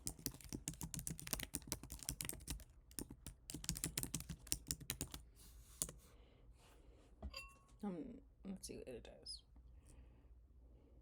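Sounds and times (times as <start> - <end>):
fast typing on keyboard: 0.0 - 5.2.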